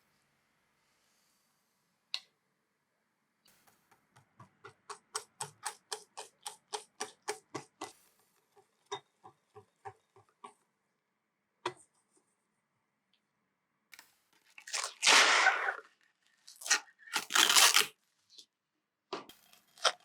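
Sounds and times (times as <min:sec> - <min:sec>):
whisk clicking against bowl: 0:04.6 - 0:07.9.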